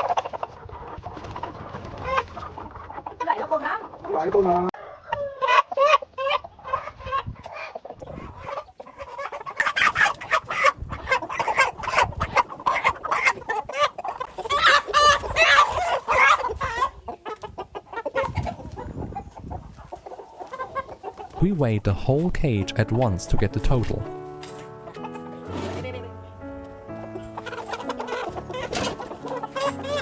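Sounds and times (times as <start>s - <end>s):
chickens clucking and squawking: 0.0s - 21.5s, 23.9s - 30.0s.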